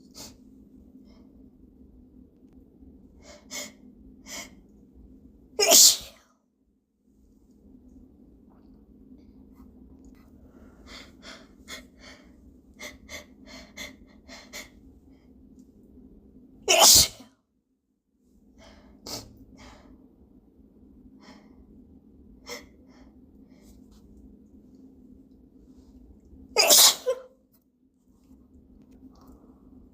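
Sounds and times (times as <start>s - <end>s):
person sneezing: 5.6s - 6.2s, 16.7s - 17.2s, 26.6s - 27.3s.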